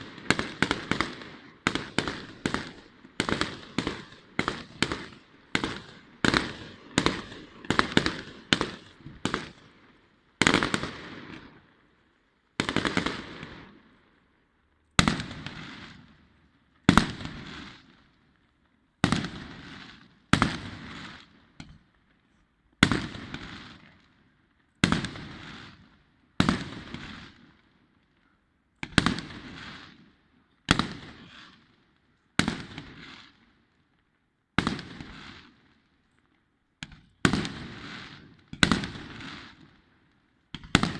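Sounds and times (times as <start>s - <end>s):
fireworks bangs: 0.0s - 11.7s, 12.6s - 13.8s, 15.0s - 18.0s, 19.0s - 21.9s, 22.8s - 24.1s, 24.8s - 27.5s, 28.8s - 31.7s, 36.8s - 39.9s, 40.5s - 40.9s.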